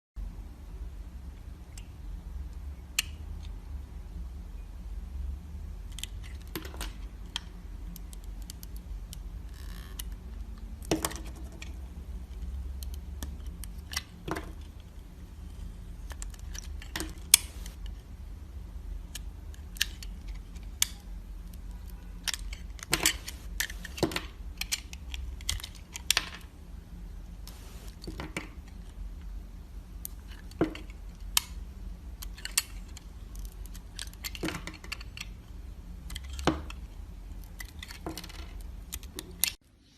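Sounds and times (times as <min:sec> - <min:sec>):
steady low hum: 0:14.6 - 0:19.2, 0:22.9 - 0:24.5, 0:26.5 - 0:30.3.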